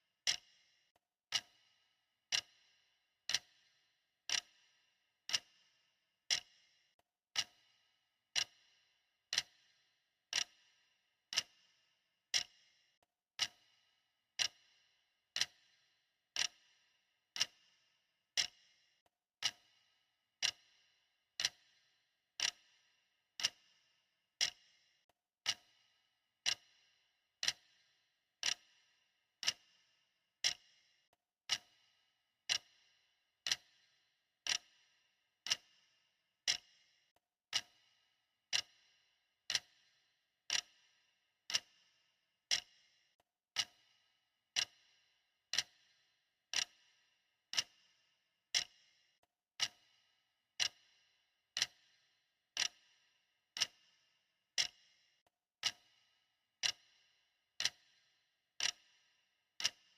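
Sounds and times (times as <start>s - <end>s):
clock ticking: 0.3s - 0.5s, 1.3s - 1.6s, 2.3s - 2.6s, 3.3s - 3.6s, 4.3s - 4.6s, 5.3s - 5.6s, 6.3s - 6.5s, 7.3s - 7.6s, 8.3s - 8.6s, 9.3s - 9.6s, 10.3s - 10.6s, 11.3s - 11.6s, 12.3s - 12.6s, 13.4s - 13.7s, 14.4s - 14.6s, 15.4s - 15.7s, 16.4s - 16.6s, 17.4s - 17.6s, 18.4s - 18.6s, 19.4s - 19.7s, 20.4s - 20.7s, 21.4s - 21.7s, 22.4s - 22.6s, 23.4s - 23.6s, 24.4s - 24.6s, 25.4s - 25.8s, 26.4s - 26.7s, 27.4s - 27.8s, 28.4s - 28.7s, 29.4s - 29.7s, 30.4s - 30.6s, 31.5s - 31.8s, 32.5s - 32.8s, 33.4s - 33.8s, 34.5s - 34.8s, 35.4s - 35.7s, 36.5s - 36.7s, 37.5s - 37.8s, 38.5s - 38.8s, 39.5s - 39.8s, 40.5s - 40.8s, 41.5s - 41.7s, 42.5s - 42.7s, 43.5s - 43.8s, 44.5s - 44.8s, 45.5s - 45.8s, 46.5s - 46.8s, 47.5s - 47.8s, 48.5s - 48.8s, 49.6s - 49.9s, 50.6s - 50.8s, 51.6s - 51.8s, 52.6s - 52.8s, 53.6s - 53.8s, 54.6s - 54.8s, 55.6s - 56.0s, 56.6s - 56.9s, 57.6s - 57.9s, 58.6s - 58.8s, 59.6s - 59.9s.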